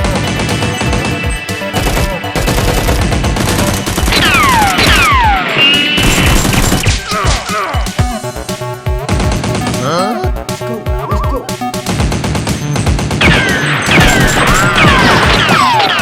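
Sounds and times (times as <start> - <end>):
background music: 0.0 - 16.0
automatic gunfire: 13.2 - 16.0.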